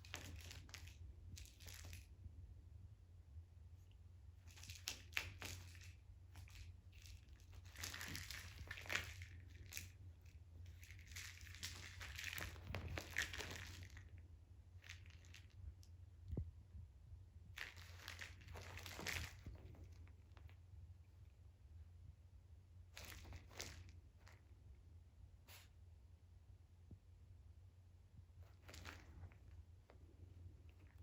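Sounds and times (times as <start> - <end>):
kitten playing with rustling toy: 0.0 - 2.2, 4.3 - 16.4, 17.5 - 20.6, 22.9 - 24.5, 28.4 - 31.0
low steady hum: 0.0 - 31.0.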